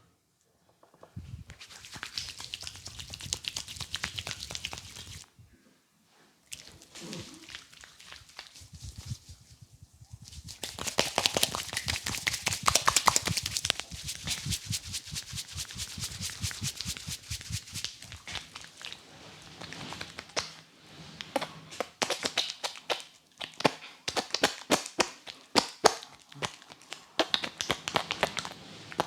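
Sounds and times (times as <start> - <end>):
hands slapping in massage: 1.5 - 5.2, 8.0 - 18.4.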